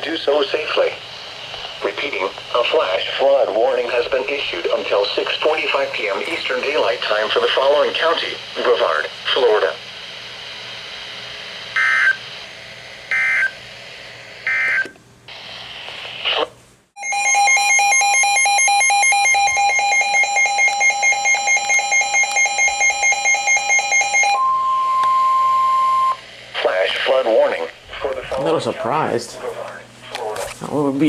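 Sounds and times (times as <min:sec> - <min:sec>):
rapidly pulsing alarm tone: 0:17.0 - 0:26.2
steady single-pitch attention tone: 0:17.0 - 0:26.2.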